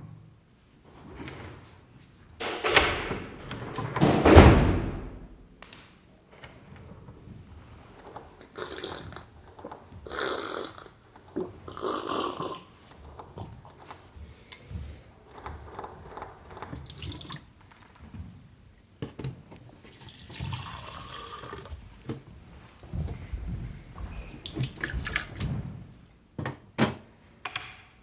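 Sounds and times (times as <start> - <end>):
water pouring: 16.0 - 17.5, 19.8 - 22.0, 24.3 - 25.5.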